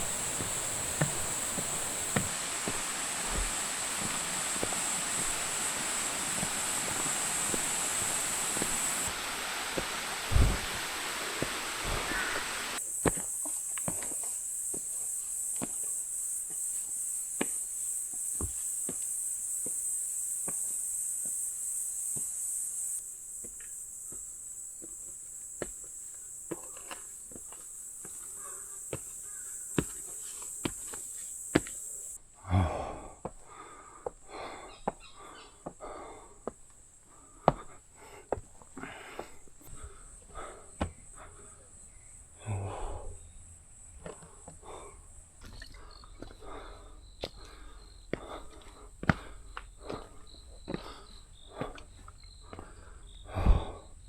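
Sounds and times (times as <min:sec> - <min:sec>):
scuffing and rustling: 0:00.0 - 0:14.3
insects pulsing buzz: 0:00.0 - 0:54.0.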